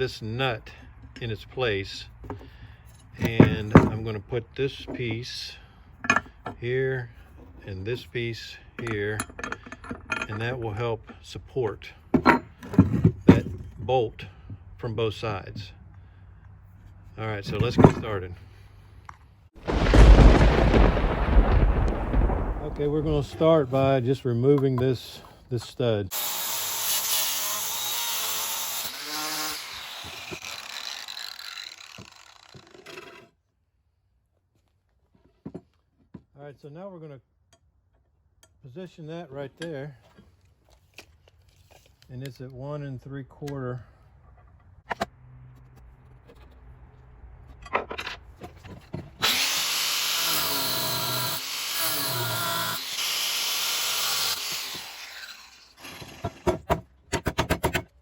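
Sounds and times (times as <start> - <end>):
grinder cutting steel: 26.1 - 33.2, 49.2 - 56.3.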